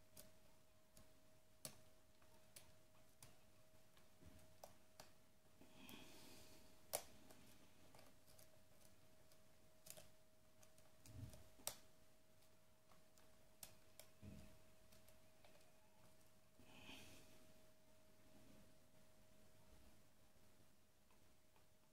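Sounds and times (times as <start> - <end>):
faint steady hum: 0.0 - 21.9.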